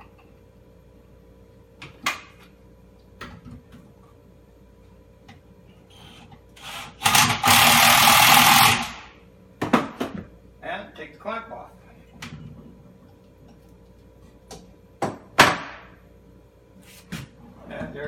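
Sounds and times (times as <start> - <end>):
cordless drill driving screw: 6.6 - 9.0.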